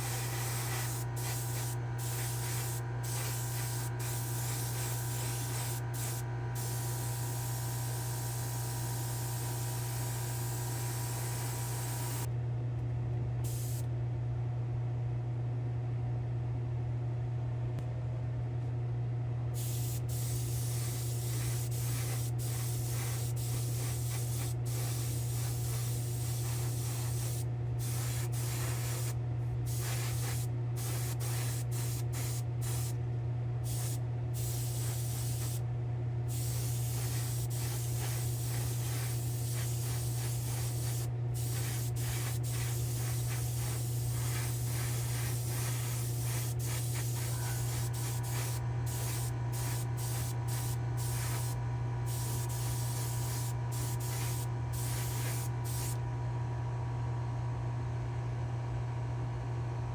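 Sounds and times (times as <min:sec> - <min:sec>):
paint spraying hiss: 0:00.0 - 0:12.3, 0:19.6 - 0:33.0, 0:33.7 - 0:35.6, 0:36.3 - 0:56.0
steady low hum: 0:00.0 - 0:59.9.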